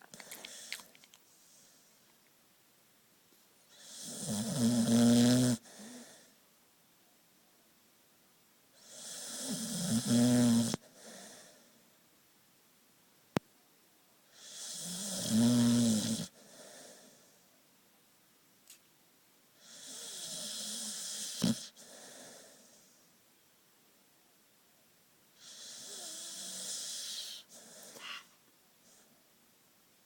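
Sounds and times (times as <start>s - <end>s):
puppy snoring: 0.0s - 1.9s, 3.7s - 6.4s, 8.7s - 11.8s, 14.3s - 17.4s, 19.6s - 23.0s, 25.4s - 29.1s.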